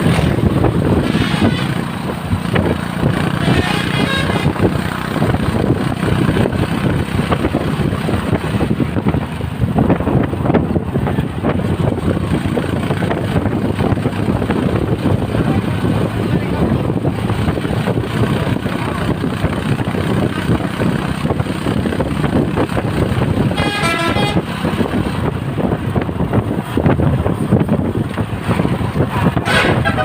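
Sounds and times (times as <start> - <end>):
bus engine rumble: 0.0 - 30.0
road noise: 0.0 - 30.0
musical bus horn toot: 1.0 - 1.8, 3.4 - 4.7, 23.5 - 24.6, 29.4 - 30.0.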